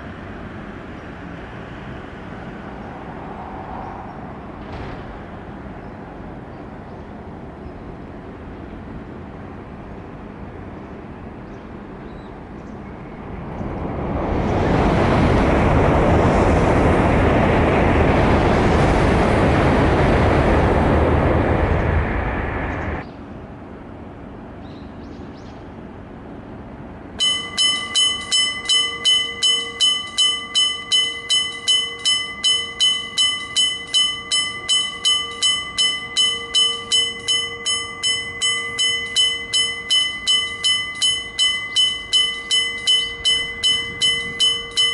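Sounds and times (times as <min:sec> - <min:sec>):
loud rushing noise: 0:01.4 - 0:06.5, 0:13.3 - 0:23.0
level crossing bell ringing: 0:27.2 - 0:44.9.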